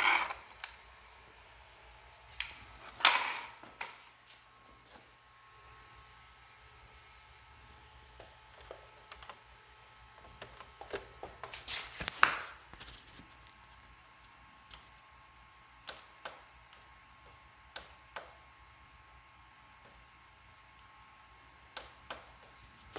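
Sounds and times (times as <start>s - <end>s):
rustling and scraping handling noise: 11.2s - 13.8s.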